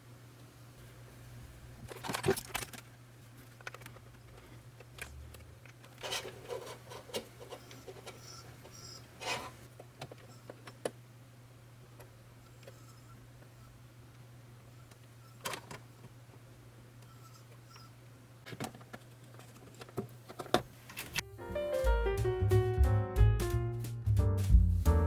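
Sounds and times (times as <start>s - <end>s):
handling clicks and scrapes: 3.5s - 10.8s.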